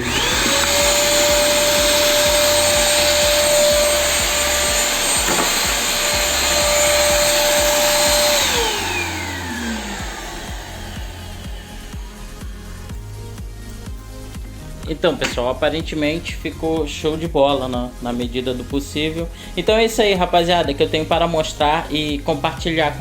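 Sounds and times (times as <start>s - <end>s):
vacuum cleaner motor whining: 0.0s - 12.9s.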